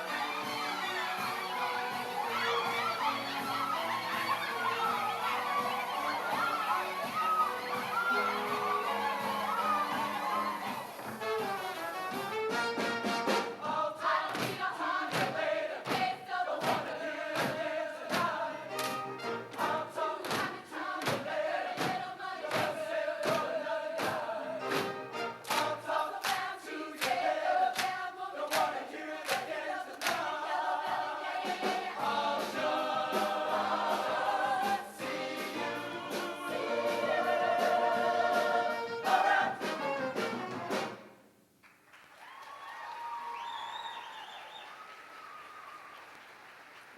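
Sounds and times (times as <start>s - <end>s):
choir singing in parts: 0.0s - 11.0s, 13.2s - 40.3s
instrumental accompaniment with beat: 0.0s - 13.8s, 23.3s - 25.8s, 30.9s - 41.2s.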